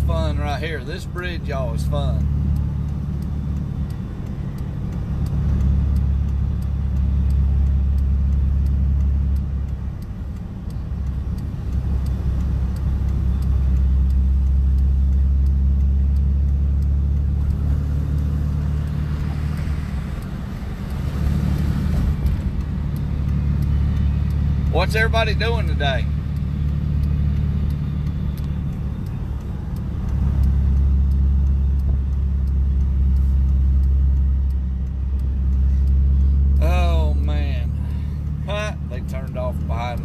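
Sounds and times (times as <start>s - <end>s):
engine and road rumble in cab: 0.0s - 40.0s.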